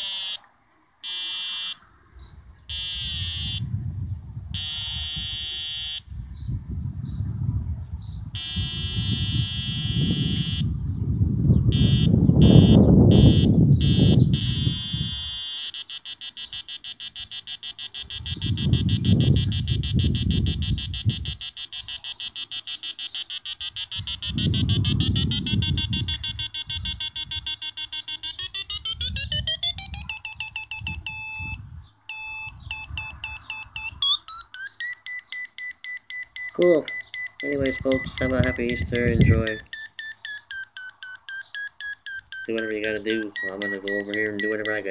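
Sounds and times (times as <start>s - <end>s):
square-wave synth buzzing: 2.7s - 3.7s, 4.6s - 6.0s, 8.4s - 10.7s, 11.7s - 42.5s.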